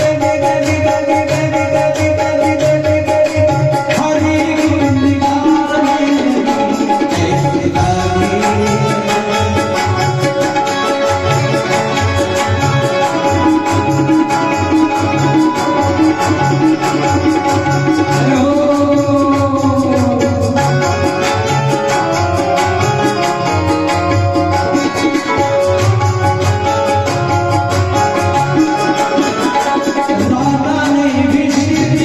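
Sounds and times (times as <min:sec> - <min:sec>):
sustained melody line: 0:00.0 - 0:32.0
tabla rhythm: 0:00.0 - 0:32.0.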